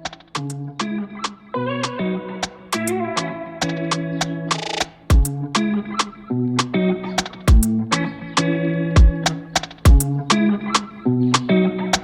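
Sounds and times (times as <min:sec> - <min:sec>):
guitar: 0:00.0 - 0:12.0
regular drum beat: 0:04.5 - 0:05.3, 0:07.2 - 0:07.7, 0:09.0 - 0:10.1.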